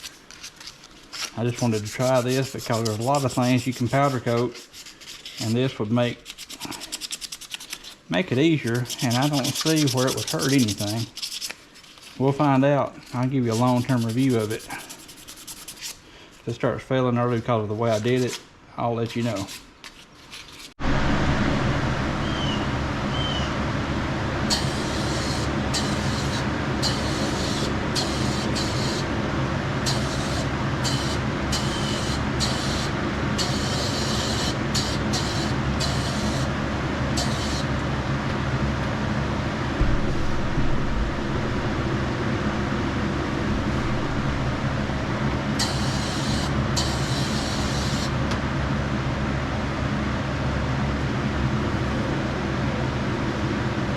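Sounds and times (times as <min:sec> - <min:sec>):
motor hum: 0:20.8 - 0:48.4
air hissing from spray gun: 0:24.5 - 0:29.1, 0:29.9 - 0:36.5, 0:37.2 - 0:37.7, 0:45.6 - 0:48.2.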